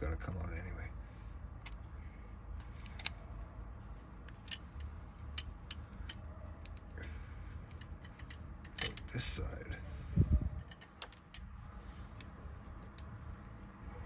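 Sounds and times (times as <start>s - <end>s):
steady low hum: 0.0s - 14.0s
small metal clicks on lock: 2.6s - 3.2s, 4.2s - 7.0s, 7.7s - 9.1s.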